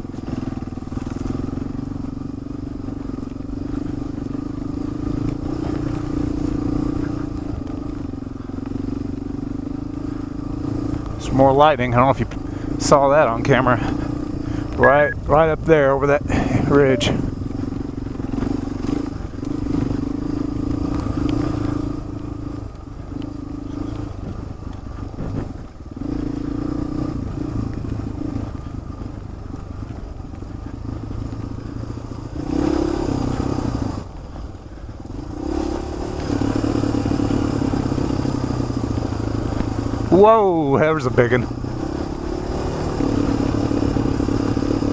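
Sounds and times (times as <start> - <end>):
motorcycle engine running: 0.0 - 44.9.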